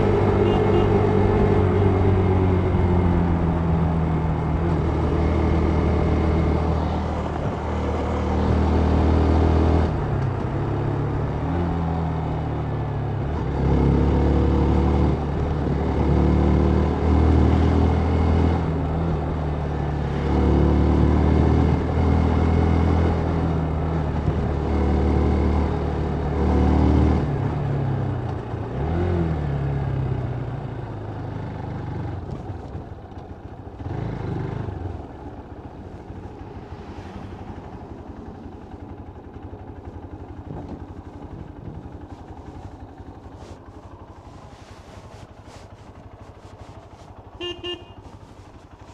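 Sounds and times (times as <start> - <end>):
motorcycle engine running: 0.0 - 16.3, 30.2 - 48.9
road and wind noise: 0.0 - 48.9.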